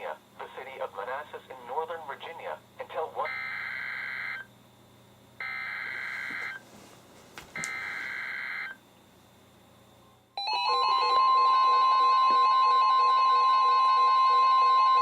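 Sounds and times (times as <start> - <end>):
steady attention tone: 7.6 - 8.8, 9.7 - 15.0
pulsing alarm beeps: 10.4 - 15.0.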